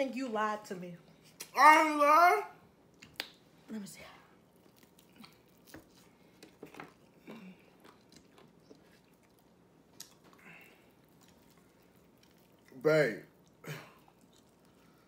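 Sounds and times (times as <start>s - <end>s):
chewing crispy chicken: 4.5s - 15.0s.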